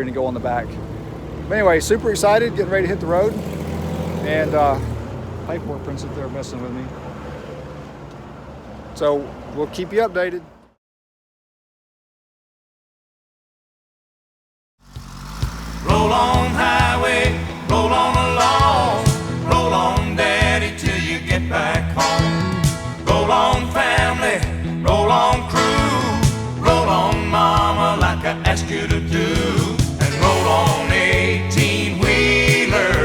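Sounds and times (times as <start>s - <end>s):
country song with singing and guitar: 15.7s - 33.0s.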